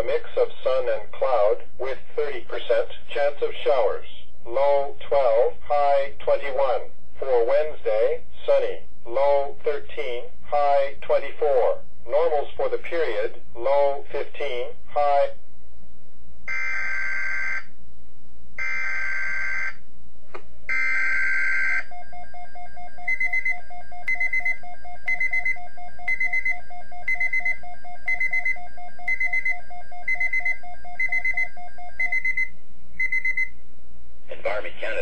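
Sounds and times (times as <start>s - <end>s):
rapid low pulsing beeps: 20.7s - 33.6s.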